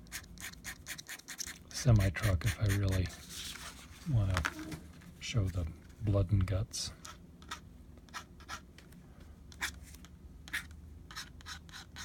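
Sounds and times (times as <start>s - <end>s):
pen nib scratching paper: 0.1s - 3.2s, 7.0s - 8.6s, 9.6s - 9.8s, 10.5s - 12.0s
faint low hum: 0.1s - 12.0s.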